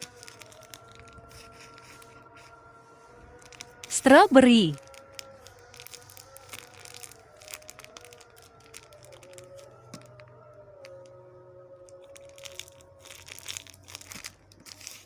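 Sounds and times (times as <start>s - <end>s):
plastic crinkling and clicking: 12.3s - 15.0s.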